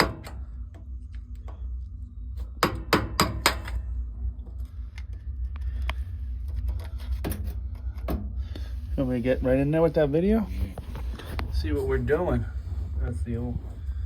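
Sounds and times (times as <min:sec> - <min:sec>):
steady low hum: 0:00.0 - 0:14.0
hammer striking metal: 0:02.6 - 0:03.8.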